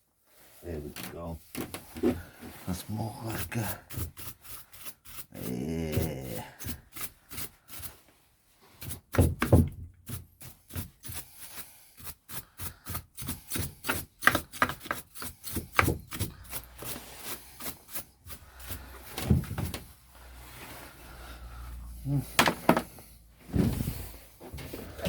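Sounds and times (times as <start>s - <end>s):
paintbrush scrubbing: 2.6s - 5.6s, 6.2s - 9.1s, 10.1s - 19.2s.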